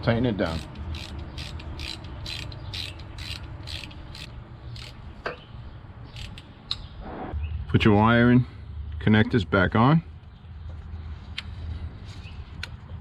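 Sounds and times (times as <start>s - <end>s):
ratchet wrench clicking: 0.5s - 5.0s, 6.1s - 6.5s.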